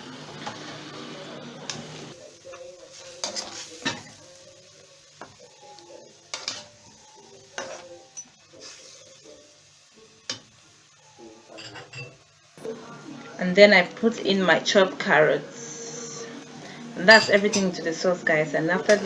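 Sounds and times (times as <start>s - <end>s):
sauce simmering: 0.0s - 19.0s
utensil scraping a cooking pot: 1.7s - 4.4s, 7.5s - 9.2s, 11.5s - 12.3s, 15.6s - 19.0s.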